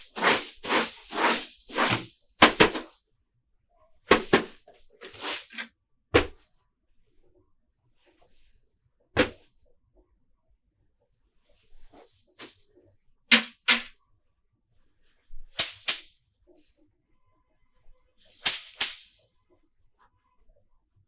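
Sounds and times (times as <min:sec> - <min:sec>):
broom sweeping: 0:00.0 - 0:03.0, 0:04.1 - 0:06.5, 0:09.2 - 0:09.6, 0:11.9 - 0:12.6, 0:13.3 - 0:13.9, 0:15.6 - 0:16.1, 0:18.2 - 0:19.2.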